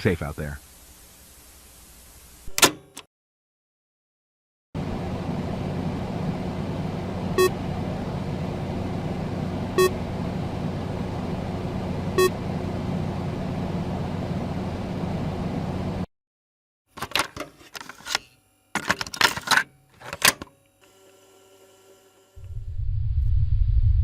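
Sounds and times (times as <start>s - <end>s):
low electrical hum: 0.0s - 2.5s, 4.8s - 16.1s
low electronic beep: 7.3s - 7.6s, 9.8s - 10.0s, 12.1s - 12.5s.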